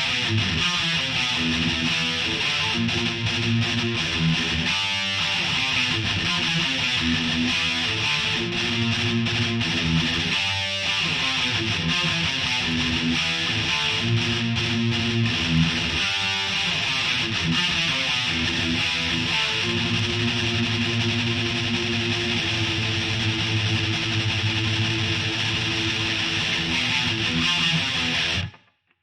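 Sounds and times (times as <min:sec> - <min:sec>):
distorted electric guitar riff: 0:00.0 - 0:28.8.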